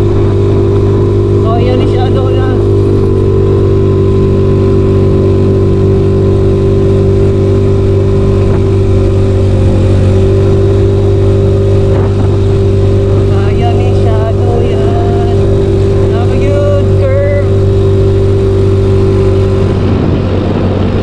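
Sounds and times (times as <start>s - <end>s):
scooter engine running: 0.0s - 21.0s.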